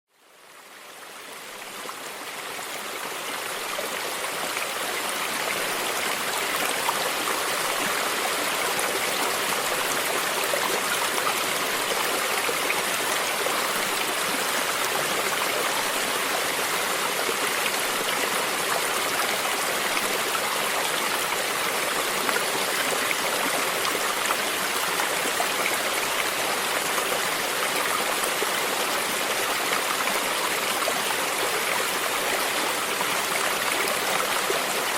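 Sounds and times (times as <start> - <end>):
stream water babbling: 0.1 - 34.9.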